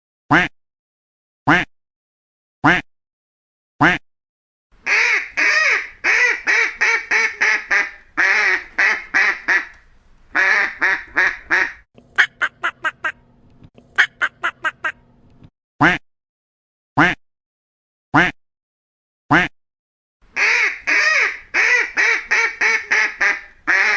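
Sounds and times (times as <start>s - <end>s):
duck quacking: 4.8s - 11.8s, 20.3s - 23.9s.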